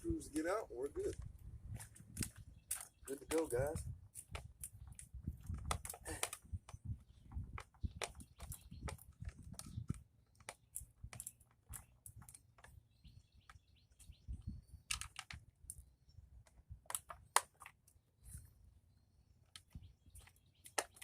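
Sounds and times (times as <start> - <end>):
clicks and taps on plastic: 4.1 - 12.8
faint bird chirps: 12.8 - 14.9.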